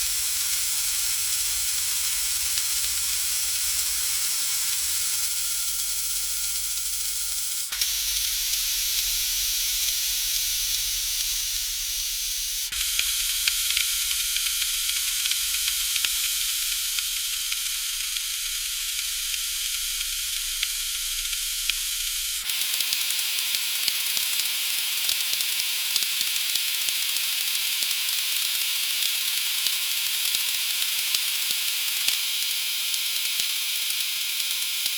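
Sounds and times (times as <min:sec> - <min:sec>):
food sizzling in a pan: 0:00.0 - 0:17.3.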